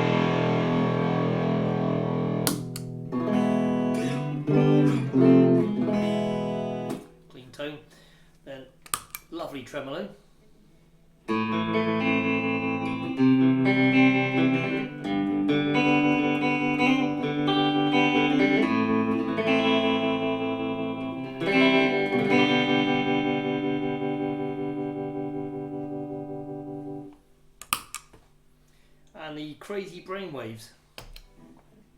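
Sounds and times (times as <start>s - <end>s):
electric guitar tremolo chords: 0.0s - 7.1s, 11.3s - 27.1s.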